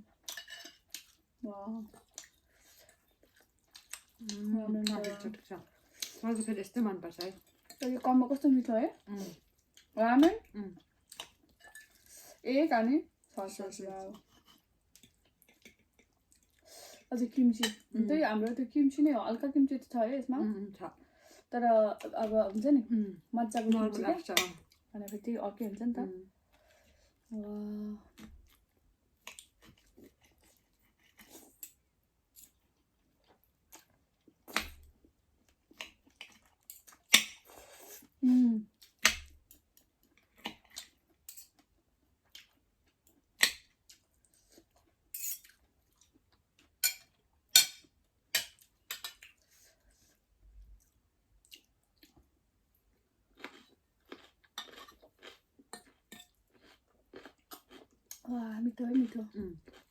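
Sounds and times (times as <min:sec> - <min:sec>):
chewing and mouth noises: 0:00.1 - 0:06.2, 0:14.1 - 0:16.7, 0:28.1 - 0:31.8, 0:48.5 - 0:52.3, 0:53.0 - 0:59.9.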